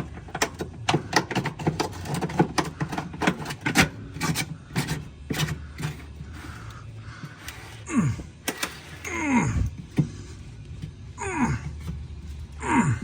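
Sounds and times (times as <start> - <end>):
plastic and wood clicking and scraping: 0.0 - 9.0
low steady hum: 0.0 - 13.0.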